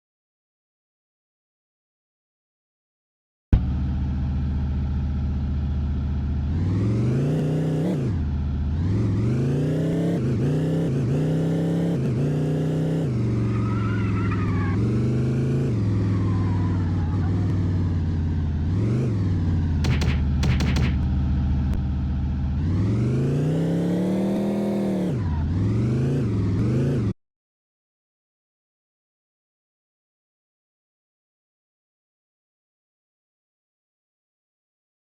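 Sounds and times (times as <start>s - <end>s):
vehicle engine revving: 3.6s - 27.1s.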